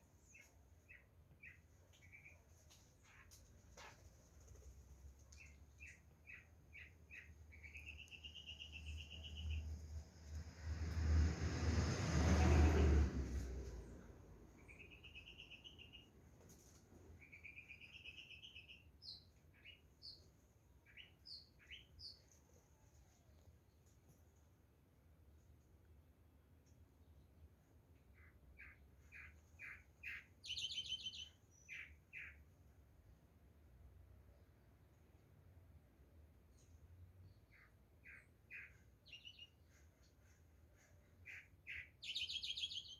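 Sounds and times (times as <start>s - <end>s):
songbird chirping and trilling: 5.3s - 9.9s, 14.6s - 16.1s, 17.2s - 22.4s, 28.1s - 32.4s, 37.3s - 42.9s
rush of noise with low rumble: 9.4s - 15.0s.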